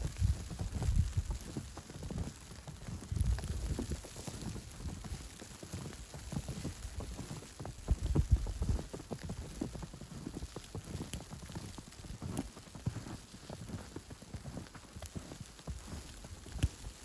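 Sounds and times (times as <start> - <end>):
wind buffeting microphone: 0.0 - 1.6, 3.1 - 4.0
footsteps crunching in snow: 0.1 - 17.0.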